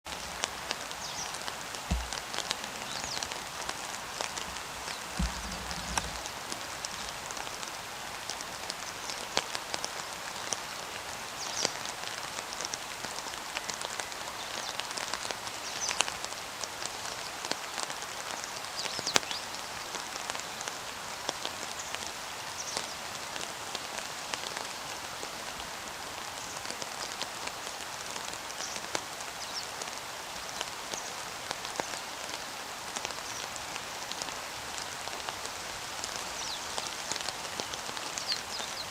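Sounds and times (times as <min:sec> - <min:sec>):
outdoor hiss like rain: 0:00.0 - 0:38.9
distant birds chirping: 0:00.1 - 0:07.6.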